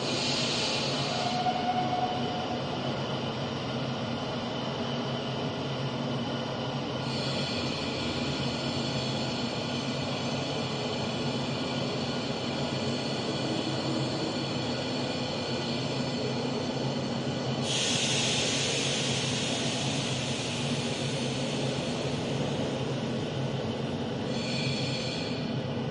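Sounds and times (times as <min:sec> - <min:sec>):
train rumbling: 0:00.0 - 0:25.9
loud hiss: 0:17.6 - 0:22.6.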